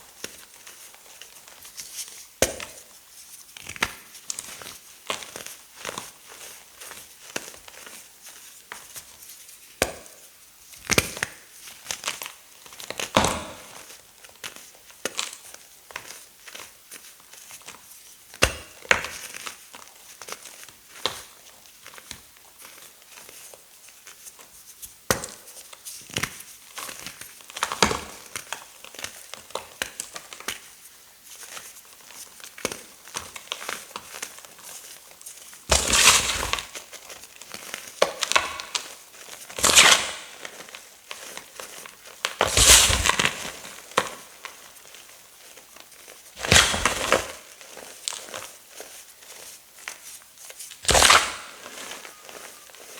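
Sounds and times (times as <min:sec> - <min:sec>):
chalk crackling and crumbling: 0:19.1 - 0:52.9
chalk crunches: 0:33.7 - 0:52.9.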